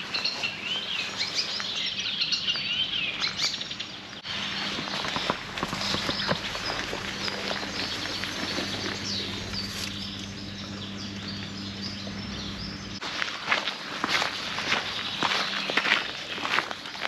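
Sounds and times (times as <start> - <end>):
small birds chirping: 0.0 - 13.0, 14.0 - 17.0
outdoor background noise: 0.0 - 17.0
low even hum: 1.7 - 17.0.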